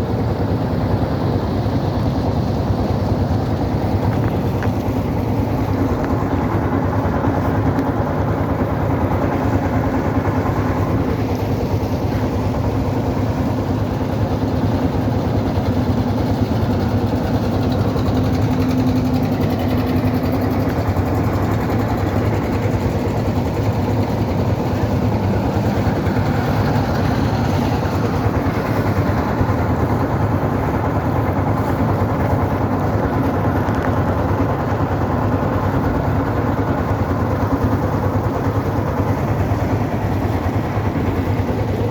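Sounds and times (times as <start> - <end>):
boat engine droning: 0.0 - 41.9.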